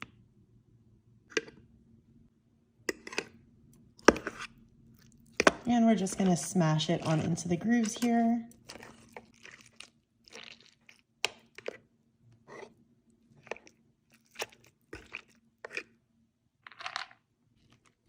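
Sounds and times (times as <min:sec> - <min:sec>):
food scraping in plastic bowl: 0:04.0 - 0:04.5, 0:05.4 - 0:09.8.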